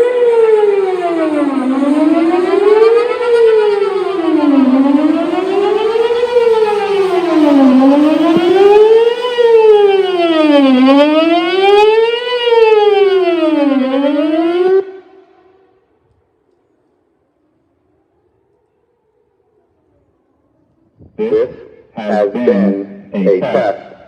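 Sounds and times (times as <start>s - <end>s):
warning siren wailing: 0.0s - 15.8s, 21.1s - 24.0s.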